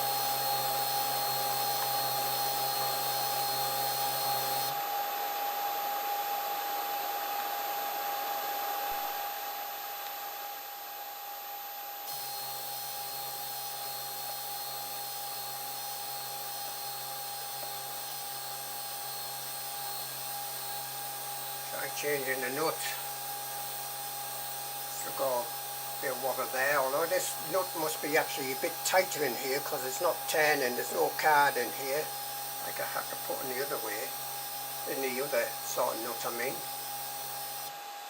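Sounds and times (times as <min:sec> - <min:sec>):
printer whirring: 0:00.0 - 0:05.6, 0:12.1 - 0:38.0
steady whine: 0:21.6 - 0:23.1, 0:24.7 - 0:38.0.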